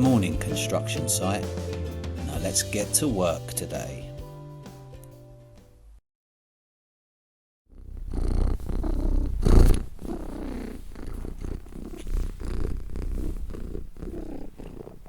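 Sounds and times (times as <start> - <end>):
cat purring: 7.7 - 15.0.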